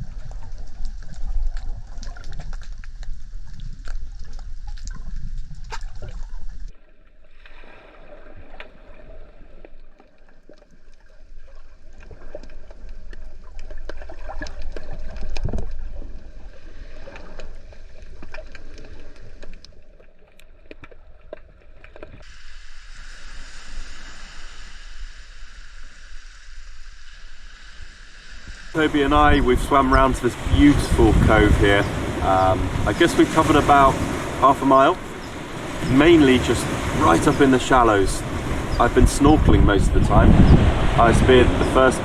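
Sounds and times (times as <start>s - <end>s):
underwater clicks and crackles: 0.0s - 22.3s
low water rumble: 0.0s - 42.0s
steady hiss: 22.2s - 38.2s.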